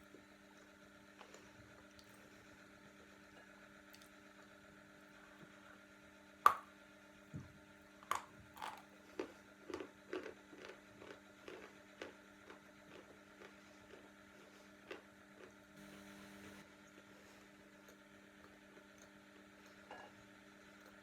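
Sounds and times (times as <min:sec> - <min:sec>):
low steady hum: 0:00.0 - 0:21.0
chewing crunches: 0:08.0 - 0:15.6.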